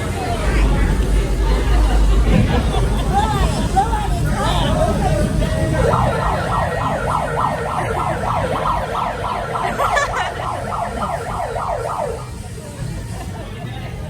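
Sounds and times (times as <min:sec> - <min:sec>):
crowd hum: 0:00.0 - 0:14.0
siren-like alarm wailing: 0:05.0 - 0:12.7.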